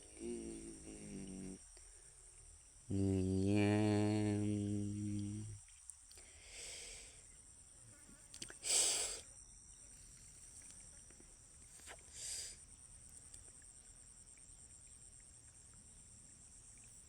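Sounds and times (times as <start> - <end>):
high insect chirring: 0.0 - 17.0
person breathing puffs: 11.9 - 12.6.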